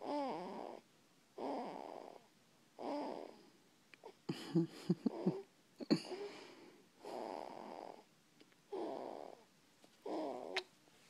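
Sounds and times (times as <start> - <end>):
person snorting: 4.3 - 7.4.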